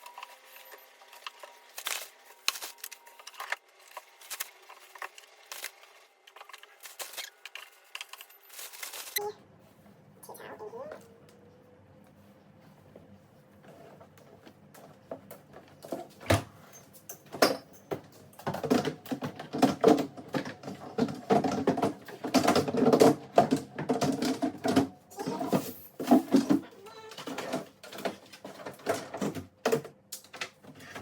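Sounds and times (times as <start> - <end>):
containers clattering: 18.4 - 29.8.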